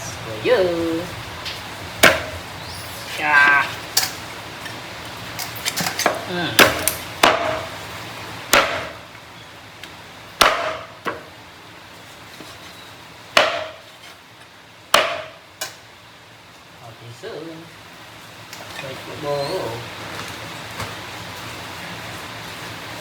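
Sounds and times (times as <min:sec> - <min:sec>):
knife chopping on wooden board: 0:02.0 - 0:02.4, 0:06.0 - 0:07.7, 0:08.5 - 0:09.0, 0:10.4 - 0:11.3, 0:13.4 - 0:13.8, 0:14.9 - 0:15.4.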